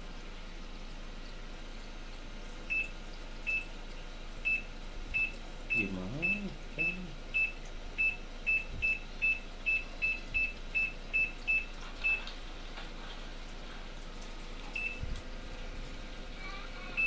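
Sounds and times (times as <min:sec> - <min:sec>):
washing machine high beeps: 0:02.6 - 0:12.5, 0:14.6 - 0:17.0.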